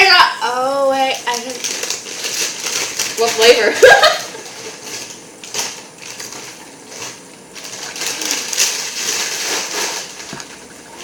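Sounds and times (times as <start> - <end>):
person chewing crunchy chips: 4.3 - 11.0.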